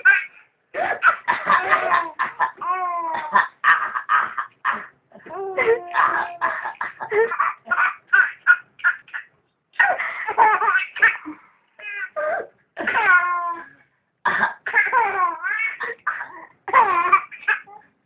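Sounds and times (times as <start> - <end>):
person coughing: 0.8 - 2.4, 4.1 - 7.3.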